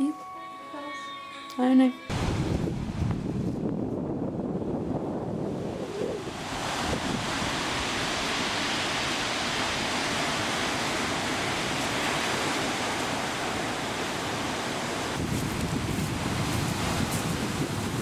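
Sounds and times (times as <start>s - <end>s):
wind: 0.0s - 18.0s
sea surf: 2.1s - 3.3s, 5.5s - 18.0s.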